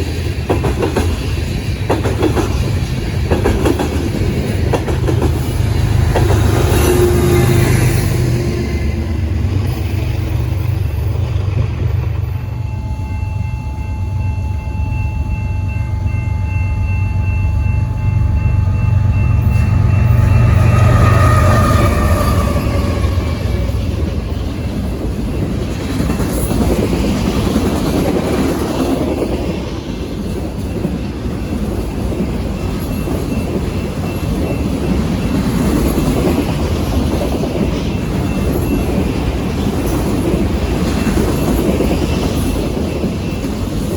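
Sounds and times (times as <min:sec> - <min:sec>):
rail cars rattling past: 0:00.0 - 0:43.9
locomotive engine rumble: 0:01.0 - 0:15.4.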